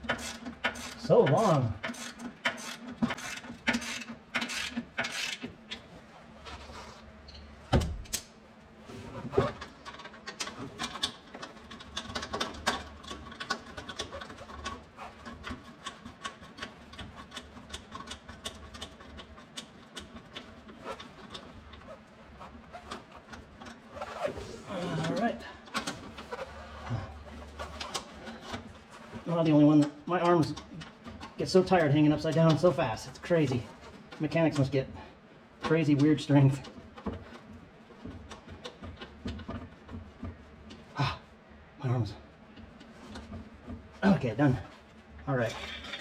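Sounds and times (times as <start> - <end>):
tools clicking and rubbing: 0.0 - 5.8, 9.4 - 32.8.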